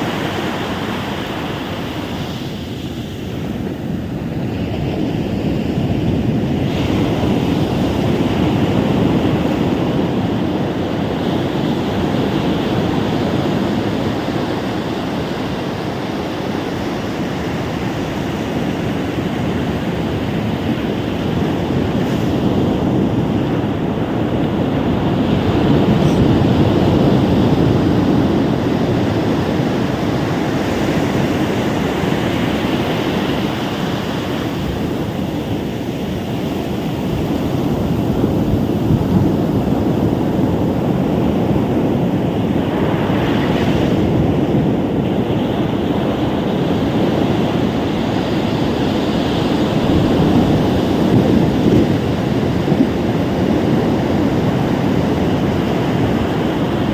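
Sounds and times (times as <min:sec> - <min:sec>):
ocean surf breaking: 0:00.0 - 0:56.9
wind buffeting microphone: 0:00.0 - 0:56.9.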